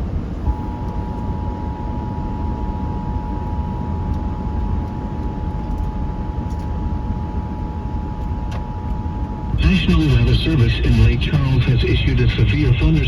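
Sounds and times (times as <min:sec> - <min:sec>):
low rumbling hiss: 0:09.5 - 0:13.0.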